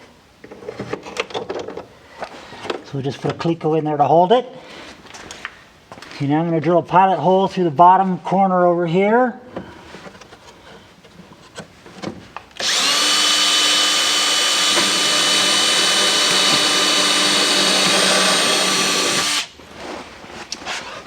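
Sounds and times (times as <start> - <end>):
electric drill drilling sheet metal: 12.6 - 19.6.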